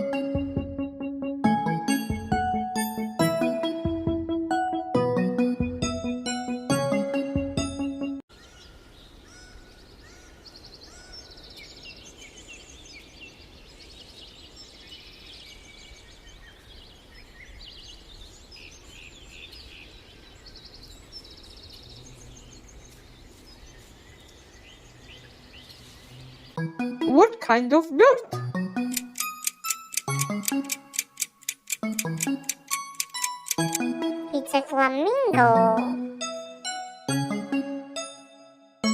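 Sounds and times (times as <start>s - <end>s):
small birds chirping: 8.3s - 26.6s, 28.8s - 33.8s.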